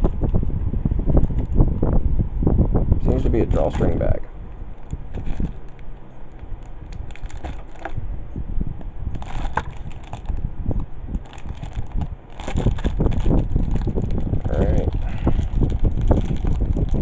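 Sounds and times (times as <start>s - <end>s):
packaging crinkling and rustling: 4.8s - 8.0s, 9.1s - 10.4s, 11.1s - 17.0s.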